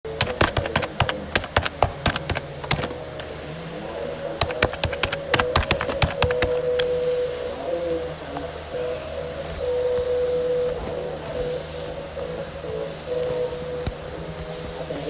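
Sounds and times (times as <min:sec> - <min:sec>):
rapid sharp clicks: 0:00.0 - 0:03.4, 0:04.3 - 0:07.0
faint steady tone: 0:00.0 - 0:15.0
steady low hum: 0:00.0 - 0:15.0.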